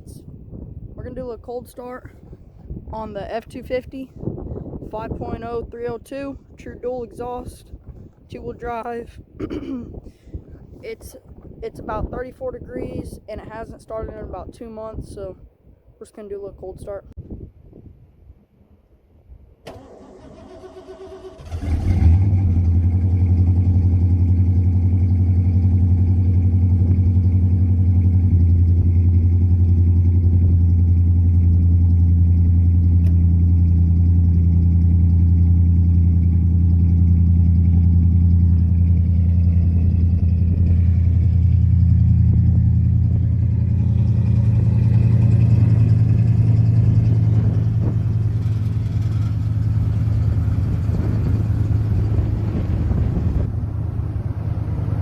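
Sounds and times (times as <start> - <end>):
engine cranking: 19.6 - 24.1
engine idling loudly: 22.6 - 54.0.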